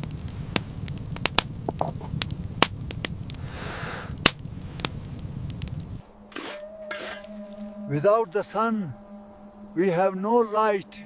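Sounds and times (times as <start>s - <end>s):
fire pops and snaps: 0.0s - 6.6s
wood fire crackling: 0.0s - 11.0s.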